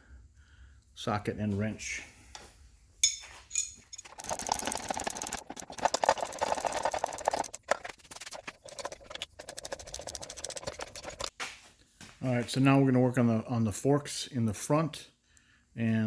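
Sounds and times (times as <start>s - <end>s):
ratchet wrench clicking: 3.6s - 7.6s.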